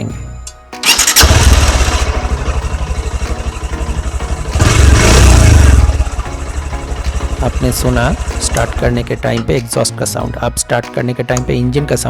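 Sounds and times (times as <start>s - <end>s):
motorcycle engine revving: 0.8s - 9.3s
motorcycle engine idling: 1.0s - 9.3s.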